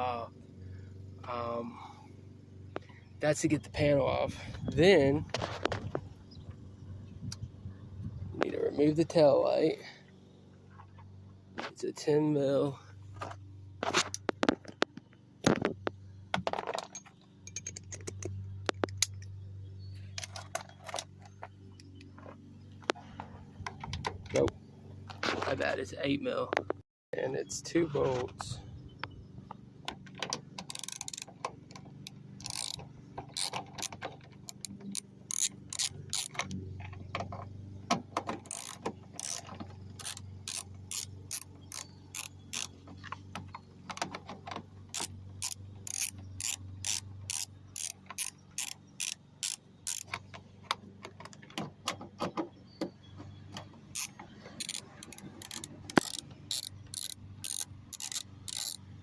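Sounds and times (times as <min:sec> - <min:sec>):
ratchet wrench clicking: 0:16.9 - 0:18.3, 0:30.6 - 0:31.3, 0:32.0 - 0:36.5, 0:38.4 - 0:42.8, 0:44.9 - 0:50.2, 0:53.9 - 0:58.8.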